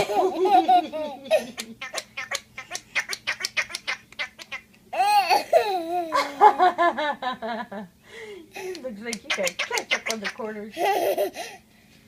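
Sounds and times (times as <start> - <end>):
toy noise maker clicking: 8.7 - 10.4.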